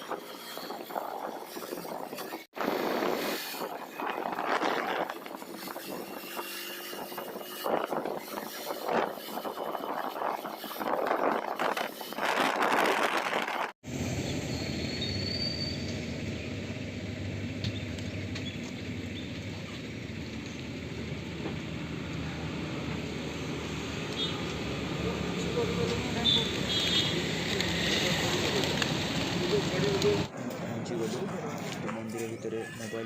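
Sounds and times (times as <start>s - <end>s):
wind buffeting microphone: 0.0s - 13.8s
road noise: 0.0s - 33.0s
vehicle engine drone: 12.6s - 32.1s.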